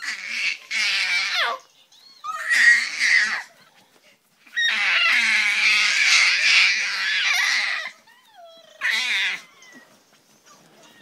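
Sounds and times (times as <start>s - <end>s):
baby squealing: 2.2s - 3.5s, 4.5s - 8.0s, 8.7s - 9.8s.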